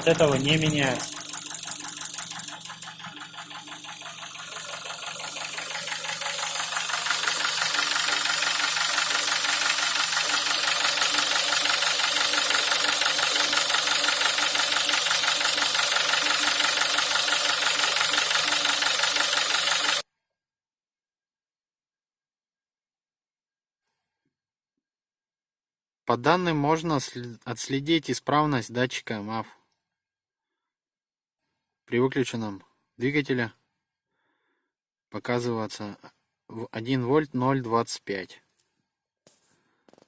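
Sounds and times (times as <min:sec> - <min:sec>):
car engine running: 0:00.0 - 0:20.0
engine knocking: 0:00.0 - 0:20.0
fast even injector chattering: 0:00.0 - 0:20.0.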